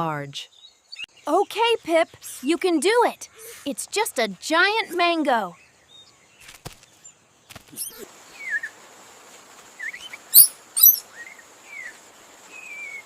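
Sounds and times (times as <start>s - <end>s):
faint high hiss: 7.8s - 13.0s
high-pitched chirps and squeaks: 10.4s - 11.0s
loud shrill squeaks: 10.4s - 11.0s.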